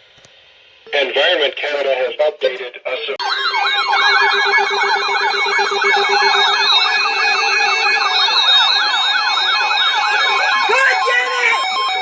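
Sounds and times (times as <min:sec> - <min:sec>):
electronic siren whoops: 0:03.2 - 0:12.0.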